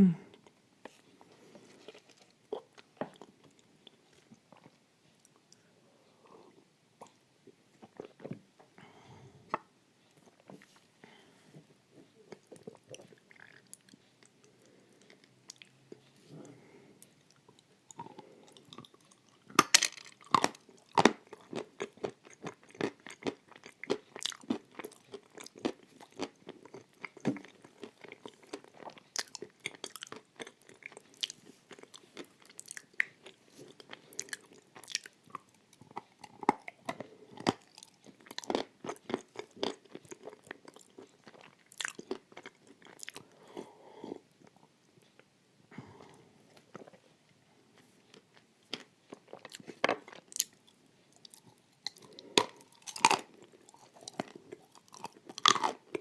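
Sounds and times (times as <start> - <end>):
crunchy chewing: 17.3 - 44.3, 47.8 - 56.0.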